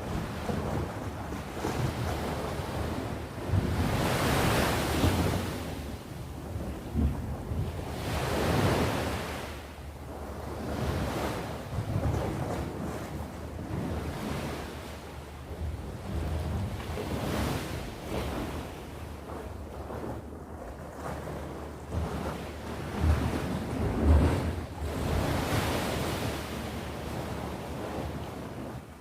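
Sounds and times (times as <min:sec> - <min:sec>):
sea waves washing ashore: 0:00.0 - 0:29.0
wind rumble on microphone: 0:00.0 - 0:29.0.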